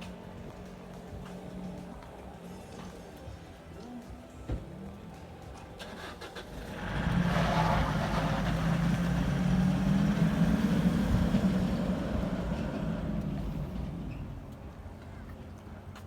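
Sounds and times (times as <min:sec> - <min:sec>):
motor engine running: 0:05.5 - 0:15.4.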